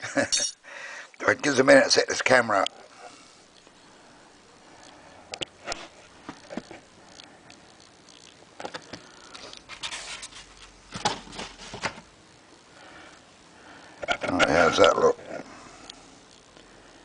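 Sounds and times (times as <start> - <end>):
rustling: 7.8 - 12.1.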